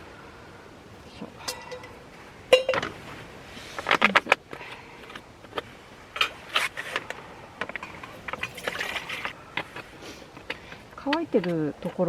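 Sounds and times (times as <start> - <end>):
gear scraping: 2.8 - 12.0.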